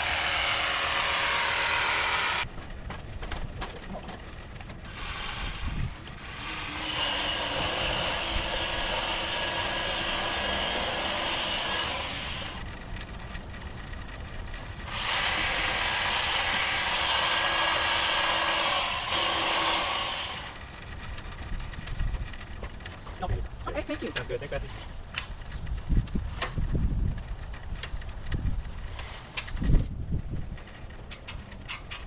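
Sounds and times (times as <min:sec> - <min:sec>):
hedge trimmer idling: 0:00.0 - 0:02.4
hedge trimmer revving: 0:00.0 - 0:02.4.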